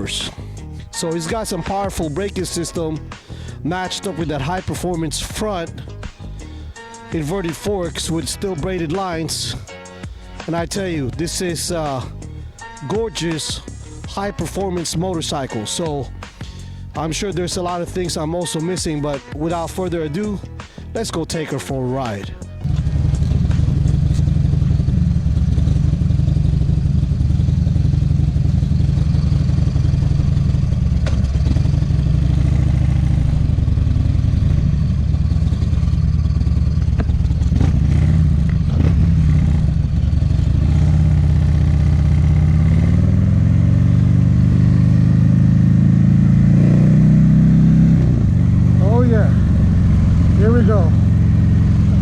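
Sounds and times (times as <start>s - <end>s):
motorcycle engine idling loud: 22.6s - 46.6s, 47.4s - 52.0s.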